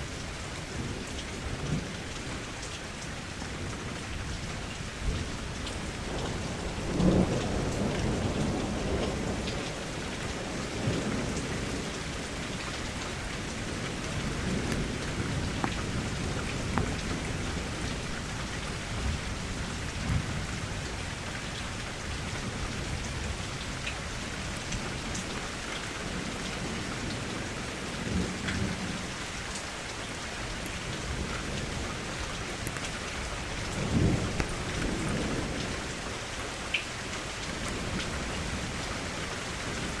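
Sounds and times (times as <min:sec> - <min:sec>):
rain on a window: 0:00.0 - 0:40.0.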